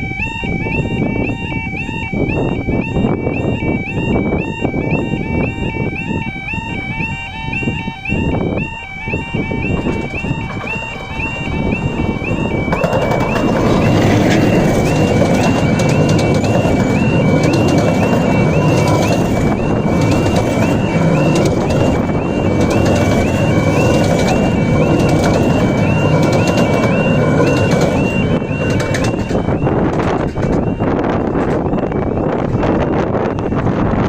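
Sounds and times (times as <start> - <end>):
level crossing alarm two-tone warning: 0.0 - 34.0
miniature steam train running: 10.0 - 31.7.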